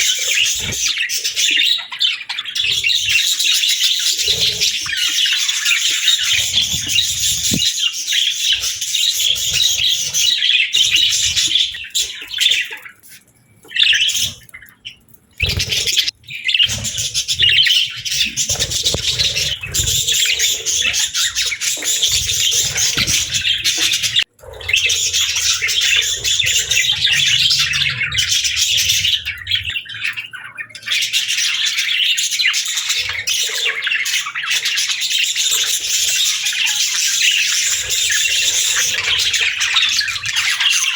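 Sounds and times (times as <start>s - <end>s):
budgerigars chirping and chattering: 0.0s - 40.9s.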